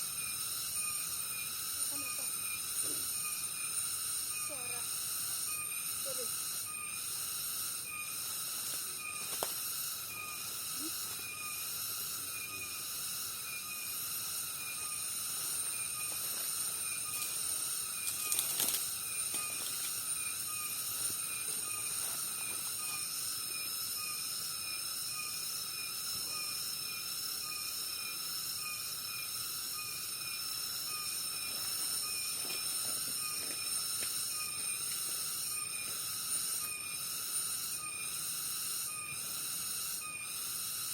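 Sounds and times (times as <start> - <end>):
insects trilling: 0.0 - 40.9
short pulsed insect call: 0.0 - 40.9.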